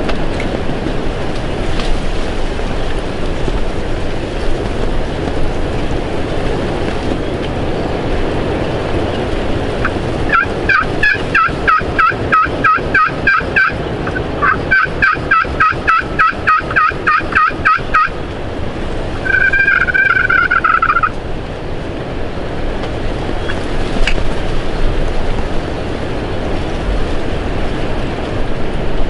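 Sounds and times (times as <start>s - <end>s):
wind rushing on microphone: 0.0s - 29.0s
turkey yelps: 9.8s - 18.2s, 19.2s - 21.1s.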